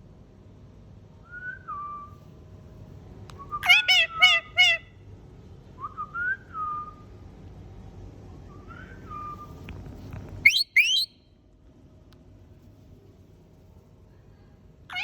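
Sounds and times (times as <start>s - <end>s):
parakeet whistling: 3.6s - 4.8s, 10.4s - 11.1s.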